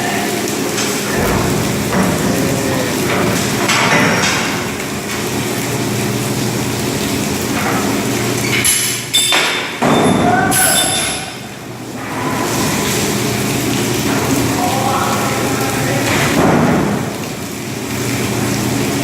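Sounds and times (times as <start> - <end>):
machinery hum: 0.0 - 8.4.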